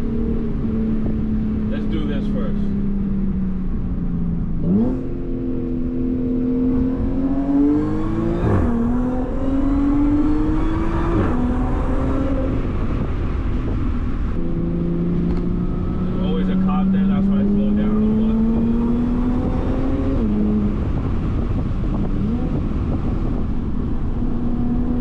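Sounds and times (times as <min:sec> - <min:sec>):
car engine accelerating: 0:00.0 - 0:25.0.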